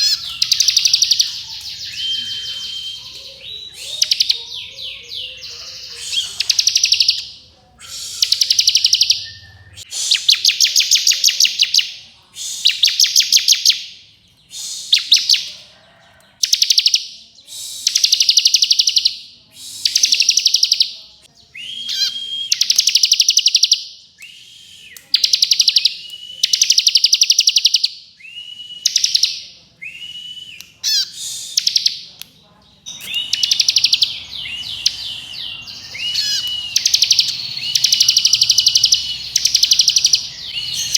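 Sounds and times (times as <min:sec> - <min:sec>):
bird singing rapid trills: 0:00.0 - 0:11.9, 0:17.8 - 0:21.0, 0:32.8 - 0:40.9.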